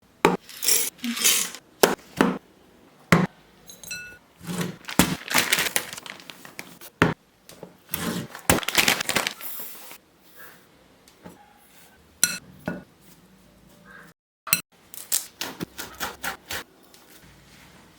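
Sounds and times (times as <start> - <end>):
utensils clinking against bowls: 0.4 - 1.6, 3.6 - 4.8.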